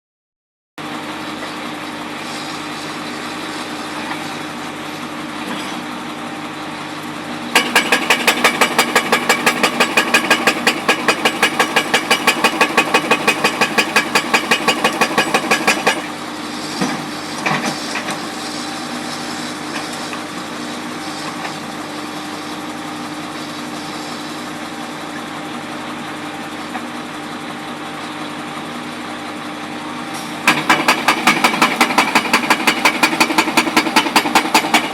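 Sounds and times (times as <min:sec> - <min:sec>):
jackhammer hammering: 0:07.6 - 0:16.2, 0:30.4 - 0:34.9
machine engine running: 0:30.4 - 0:34.9.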